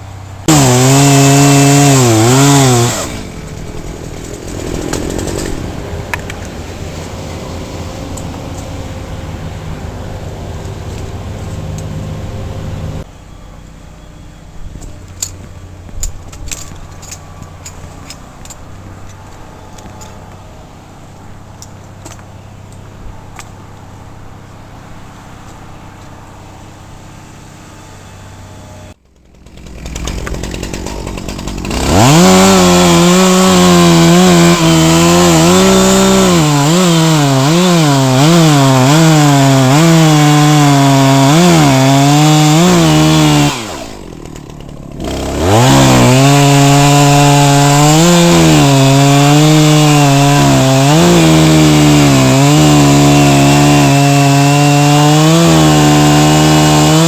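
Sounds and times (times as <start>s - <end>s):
chainsaw cutting wood: 0.4s - 5.6s, 29.0s - 57.0s
low steady rumble: 3.1s - 31.5s.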